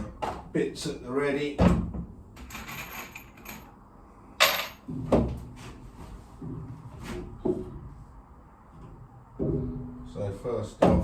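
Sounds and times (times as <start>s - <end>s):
wooden knocks and thuds: 4.9s - 5.4s, 10.8s - 11.0s.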